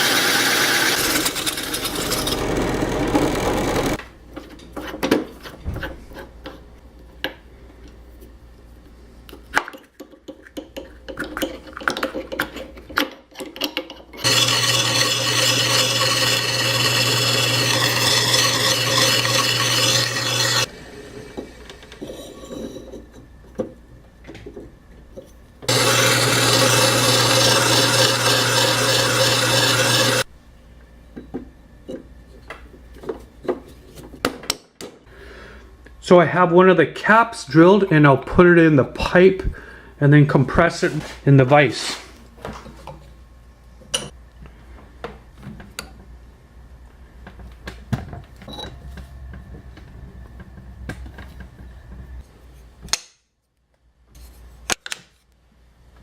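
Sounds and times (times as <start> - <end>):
drill press motor drilling: 0.0 - 4.0, 14.2 - 22.1, 25.7 - 30.3.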